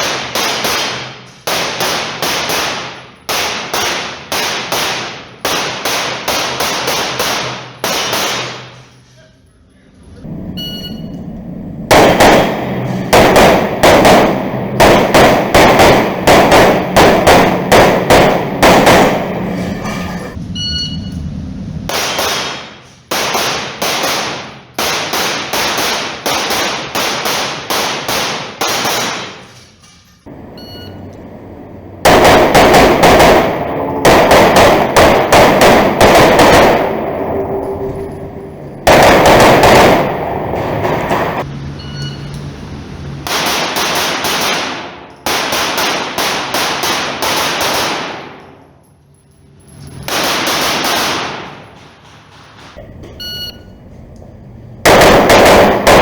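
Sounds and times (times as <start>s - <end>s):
pistol shots: 0.0s - 8.8s, 11.9s - 19.7s, 21.9s - 29.5s, 30.3s - 41.5s, 43.3s - 48.6s, 50.1s - 51.6s, 54.8s - 56.0s.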